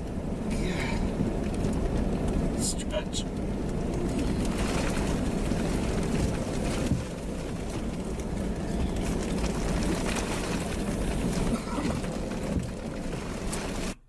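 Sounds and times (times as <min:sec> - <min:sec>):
strong wind buffeting microphone: 0:00.0 - 0:13.9
faint crackle: 0:02.9 - 0:14.0.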